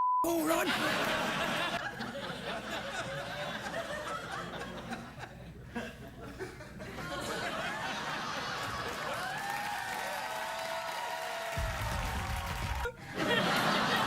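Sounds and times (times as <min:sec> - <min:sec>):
audience laughing: 0:00.4 - 0:09.5, 0:12.6 - 0:14.0.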